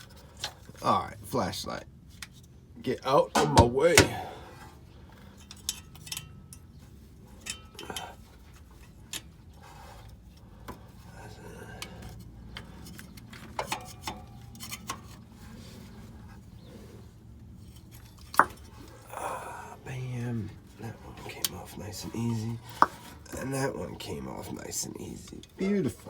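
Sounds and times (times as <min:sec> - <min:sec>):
tools tapping in engine bay: 0:03.3 - 0:04.4, 0:05.1 - 0:09.4, 0:11.8 - 0:15.2, 0:17.8 - 0:19.0, 0:22.6 - 0:23.2.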